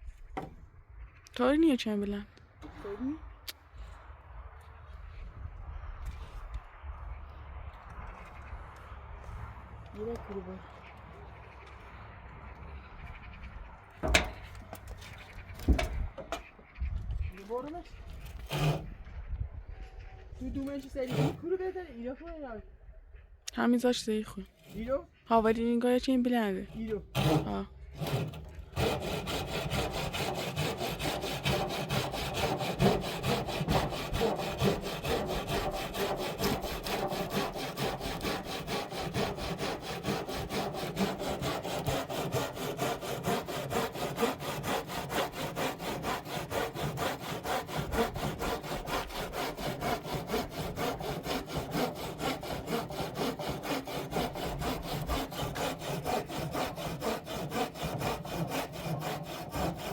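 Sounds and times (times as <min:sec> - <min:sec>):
hand saw cutting wood: 0:14.0 - 0:16.5, 0:18.1 - 0:18.9, 0:20.6 - 0:21.5, 0:26.6 - 0:59.9.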